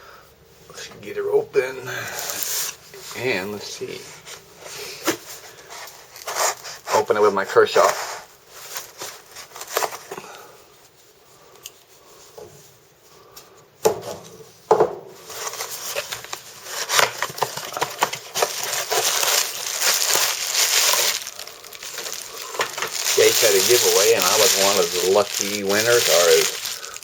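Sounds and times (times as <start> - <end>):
packaging rustling and crinkling: 2.1 - 3.3, 4.2 - 10.3, 15.2 - 27.0.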